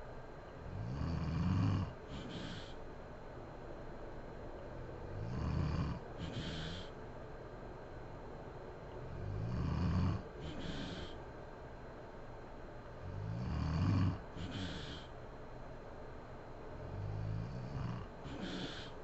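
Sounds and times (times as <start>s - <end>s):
woman snoring: 0.7s - 2.8s, 5.1s - 6.9s, 9.1s - 11.2s, 13.0s - 15.1s, 16.8s - 19.0s.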